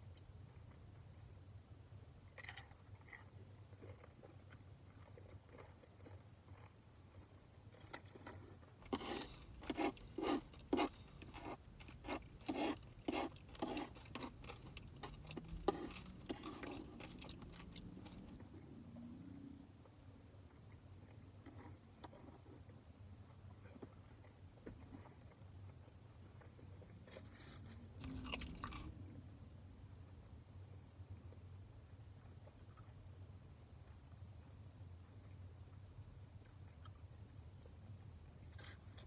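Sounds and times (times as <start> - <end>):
chewing crunchy chips: 2.4 - 18.4, 28.0 - 28.9.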